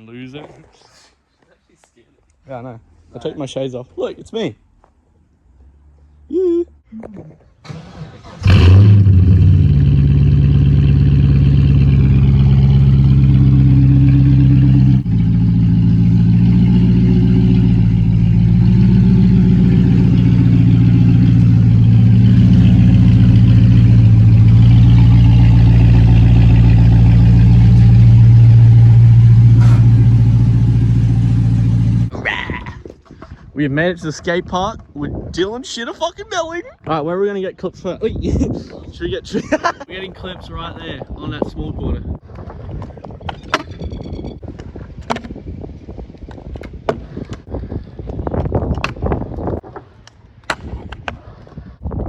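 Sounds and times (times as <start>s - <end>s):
car engine droning: 7.6s - 32.1s.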